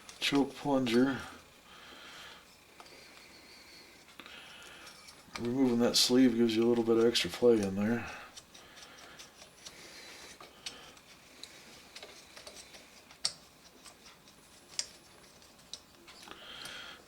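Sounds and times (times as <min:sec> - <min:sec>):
small clicks and handling noise: 0:04.0 - 0:17.0.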